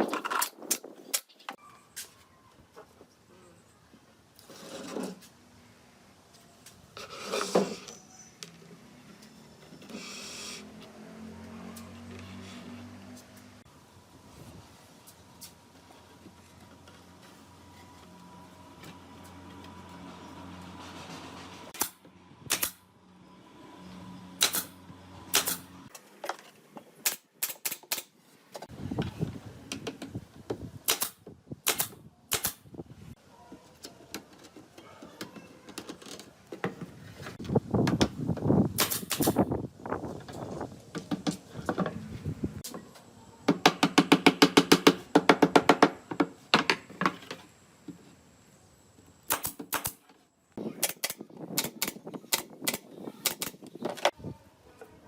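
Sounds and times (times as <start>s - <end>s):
sharp knocks and clicks on wood: 43.5s - 47.3s.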